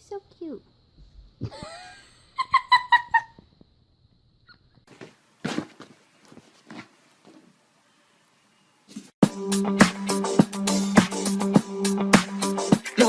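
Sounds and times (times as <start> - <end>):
scuffling: 4.8 - 7.5.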